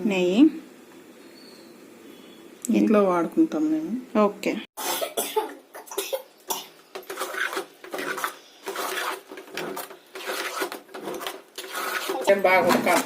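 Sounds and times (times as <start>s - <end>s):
spoon scraping in cooking pot: 7.0s - 13.0s.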